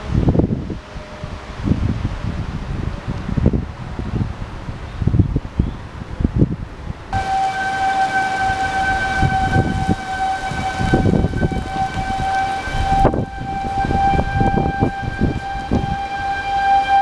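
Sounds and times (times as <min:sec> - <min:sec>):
wind buffeting microphone: 0:00.0 - 0:17.0
tornado warning siren steady tone: 0:07.2 - 0:17.0.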